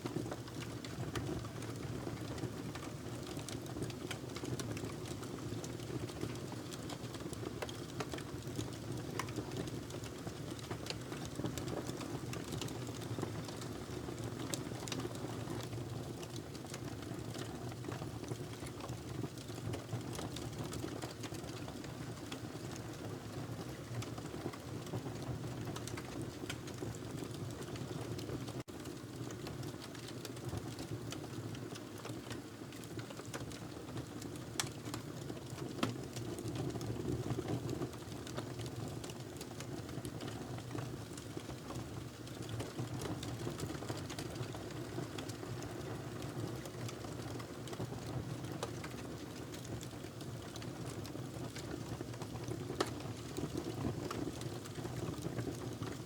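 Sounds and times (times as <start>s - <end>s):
fire crackling and popping: 28.8s - 56.0s.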